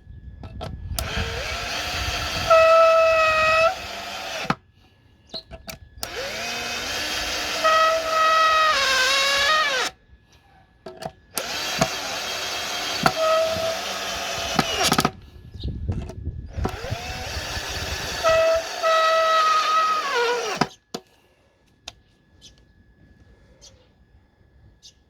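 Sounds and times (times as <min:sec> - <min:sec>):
cordless drill motor whining: 0:00.4 - 0:04.7, 0:05.3 - 0:10.0, 0:11.2 - 0:20.8.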